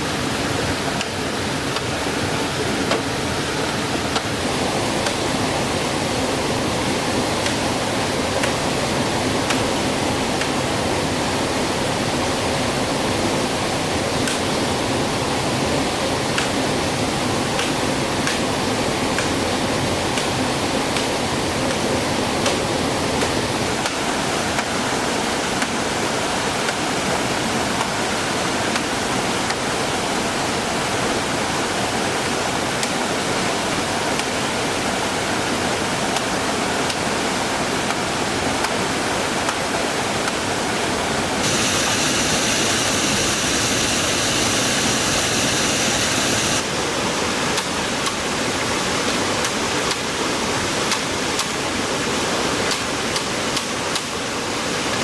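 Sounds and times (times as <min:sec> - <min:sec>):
water rushing: 0:41.2 - 0:47.3.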